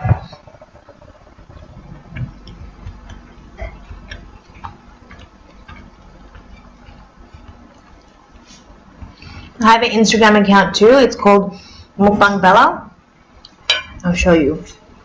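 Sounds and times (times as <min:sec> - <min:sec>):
person chewing with mouth clicks: 0:01.6 - 0:09.2.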